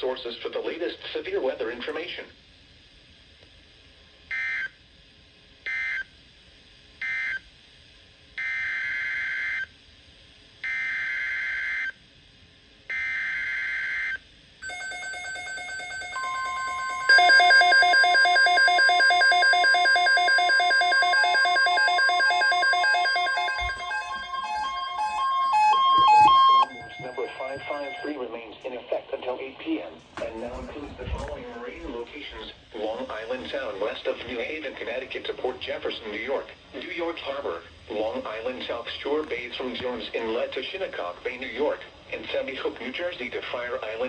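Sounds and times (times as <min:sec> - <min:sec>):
steady attention tone: 0:14.6 - 0:28.6
pulsing multi-tone alert sound: 0:16.1 - 0:28.1
raspy digital data tones: 0:16.1 - 0:28.2.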